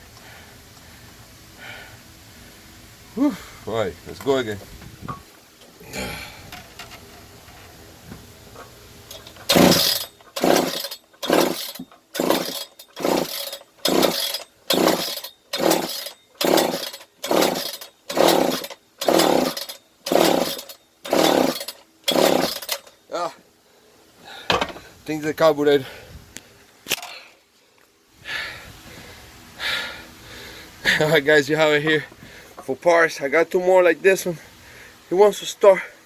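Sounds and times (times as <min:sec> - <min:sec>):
engine turning over: 0:08.5 - 0:23.0
saw recoil starter pulls: 0:09.1 - 0:23.0.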